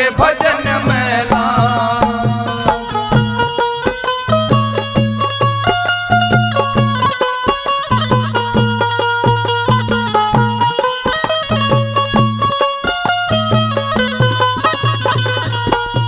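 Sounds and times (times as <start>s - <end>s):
steady percussion beat: 0.0s - 16.0s
low repeating bass: 0.7s - 3.8s.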